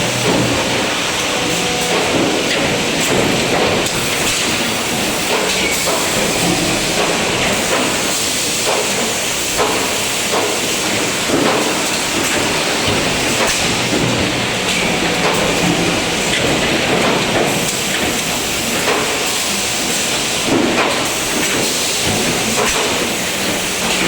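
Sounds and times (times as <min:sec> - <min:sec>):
machine knocks: 0:00.0 - 0:07.9.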